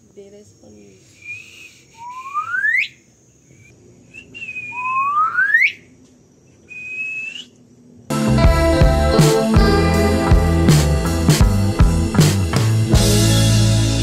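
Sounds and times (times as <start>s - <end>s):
bird whistling: 1.1s - 5.9s, 6.5s - 7.6s
music: 8.1s - 14.0s.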